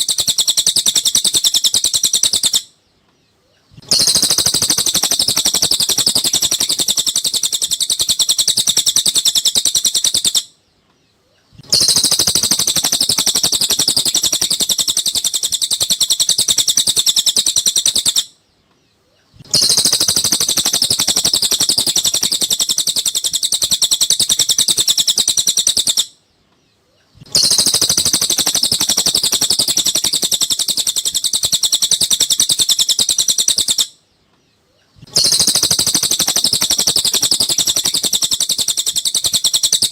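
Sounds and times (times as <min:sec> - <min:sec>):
high-pitched bird chirps: 0:00.0 - 0:02.8, 0:03.5 - 0:10.6, 0:11.3 - 0:18.4, 0:19.0 - 0:26.2, 0:26.9 - 0:34.0, 0:34.7 - 0:39.9.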